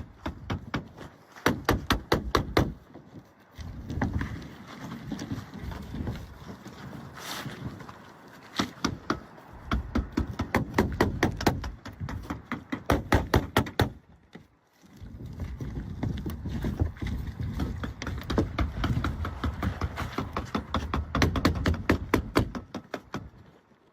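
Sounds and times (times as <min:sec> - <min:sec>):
roofing hammer knocks: 0:00.0 - 0:03.0, 0:08.6 - 0:14.0, 0:17.6 - 0:23.4.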